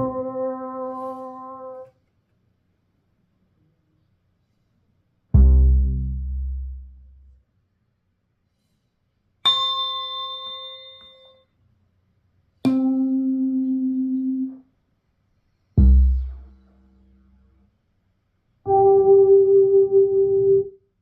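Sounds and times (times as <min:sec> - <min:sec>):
deep bass note: 0:05.4 - 0:07.3, 0:15.8 - 0:16.6.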